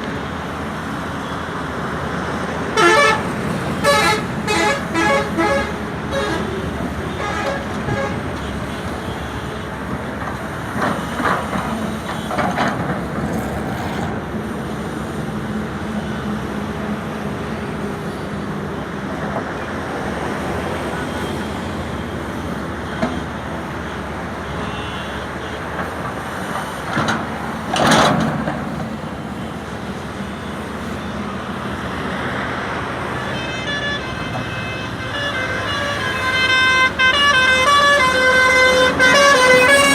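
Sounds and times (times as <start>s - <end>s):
excavator diesel engine under load: 0.0s - 24.5s, 25.6s - 39.9s
vehicle horn: 2.8s - 9.6s, 23.8s - 25.7s, 33.2s - 39.9s.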